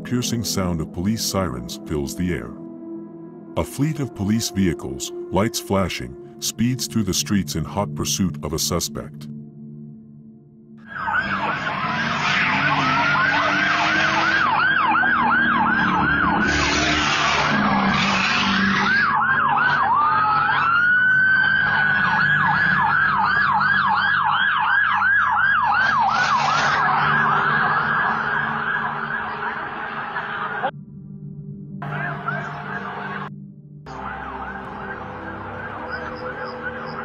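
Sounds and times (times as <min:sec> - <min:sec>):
police sirens yelping: 0:10.8 - 0:30.7, 0:31.8 - 0:33.3, 0:33.9 - 0:37.0
police vehicles speeding past: 0:10.9 - 0:30.7, 0:33.9 - 0:37.0.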